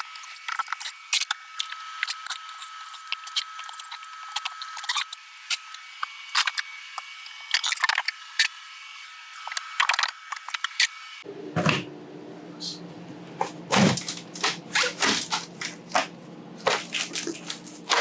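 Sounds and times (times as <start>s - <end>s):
clicks rattles and knocks of debris: 13.7s - 18.0s.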